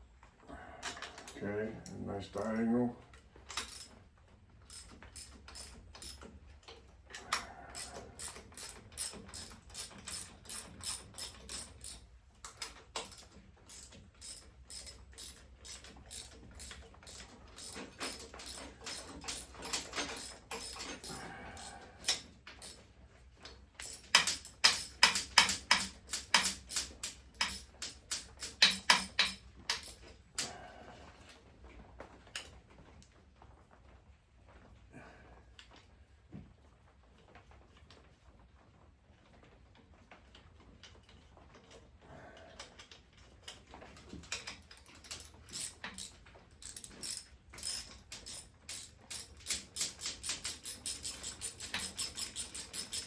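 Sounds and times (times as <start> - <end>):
ratchet wrench clicking: 3.5 - 3.9, 4.7 - 6.2, 7.7 - 12.0, 13.0 - 22.8, 23.8 - 30.1, 45.0 - 53.0.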